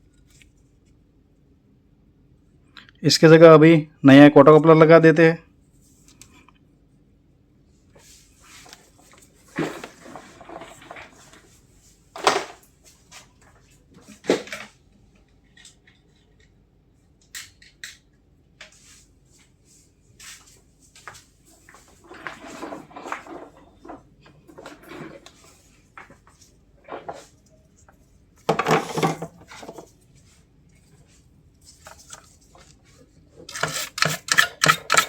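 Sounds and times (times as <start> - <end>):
tools clicking and clattering: 28.4 - 29.9, 33.5 - 35.0.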